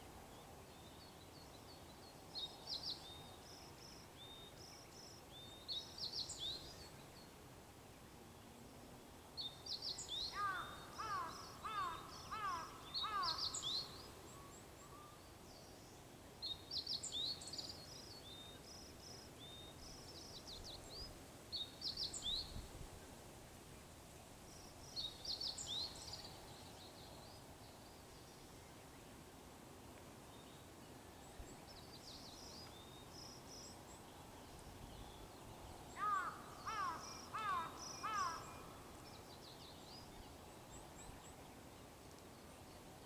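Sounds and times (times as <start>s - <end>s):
songbirds twittering: 9.4s - 22.6s, 31.2s - 43.0s
crow cawing: 10.4s - 13.5s, 36.0s - 38.5s.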